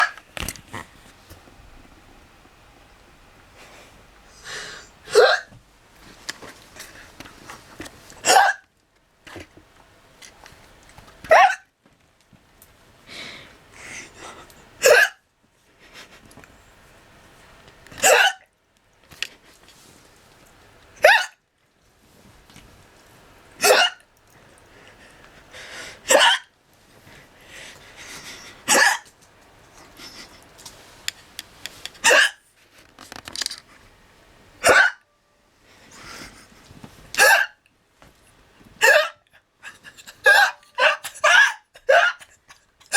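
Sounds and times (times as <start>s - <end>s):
girl hiccuping: 5.0s - 5.5s, 14.8s - 15.2s, 18.0s - 18.4s, 23.6s - 24.0s, 28.7s - 29.1s, 32.0s - 32.4s, 34.6s - 35.0s, 37.2s - 37.6s, 38.8s - 39.2s, 40.2s - 42.2s.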